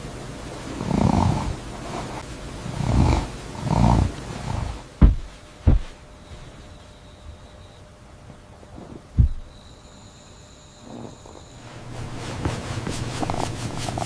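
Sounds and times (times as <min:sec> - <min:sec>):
sharp knocks: 0:05.0 - 0:06.0, 0:09.2 - 0:09.5.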